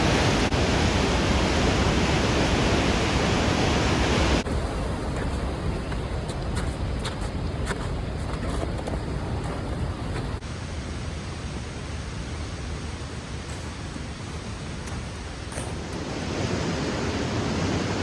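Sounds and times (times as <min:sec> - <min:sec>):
waterfall roar: 0:00.0 - 0:05.7, 0:10.4 - 0:18.0.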